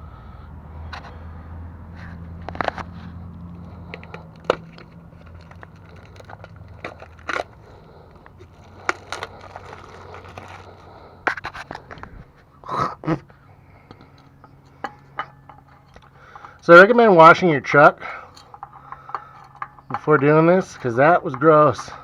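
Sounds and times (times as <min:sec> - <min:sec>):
hands handling parts: 0:02.0 - 0:12.4.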